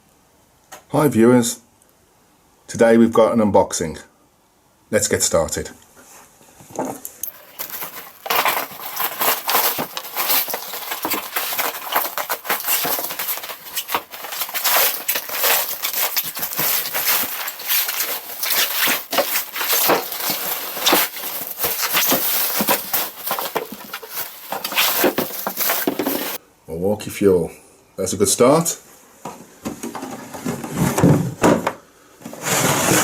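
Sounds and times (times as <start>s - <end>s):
packaging rustling and crackling: 7.3s - 26.4s.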